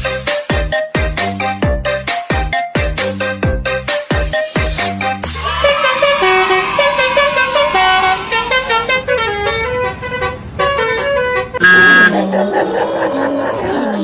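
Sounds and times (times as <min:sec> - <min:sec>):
multi-tone bus horn tune: 0:05.4 - 0:12.1.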